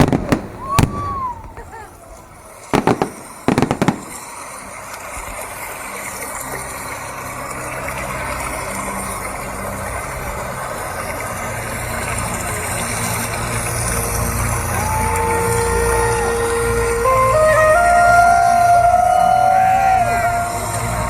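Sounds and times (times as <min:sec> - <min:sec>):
steady rumble: 0:00.0 - 0:04.3
fireworks shells bursting: 0:00.0 - 0:05.4.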